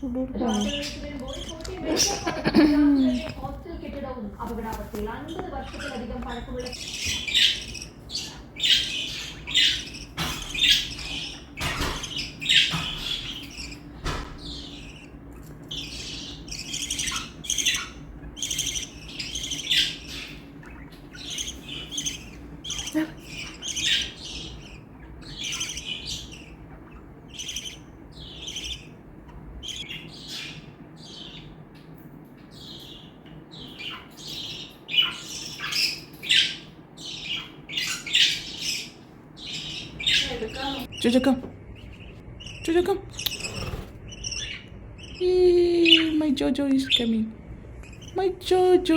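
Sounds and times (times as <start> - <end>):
budgerigars chirping and chattering: 0.0 - 48.9.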